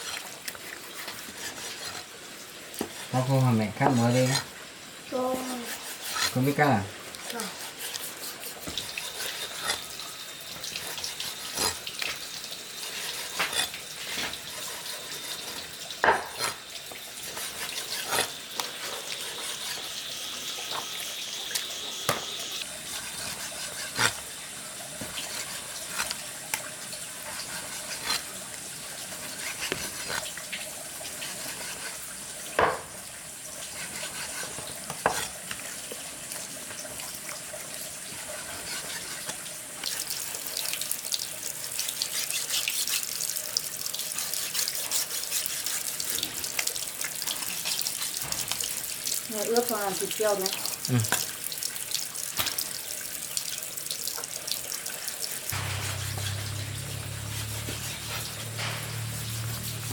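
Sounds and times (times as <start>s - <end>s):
steady hiss: 55.5s - 59.9s.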